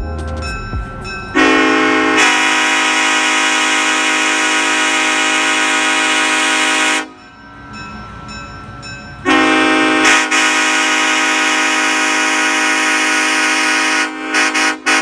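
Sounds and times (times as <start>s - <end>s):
locomotive air horn chord: 1.3s - 7.2s, 9.2s - 15.0s.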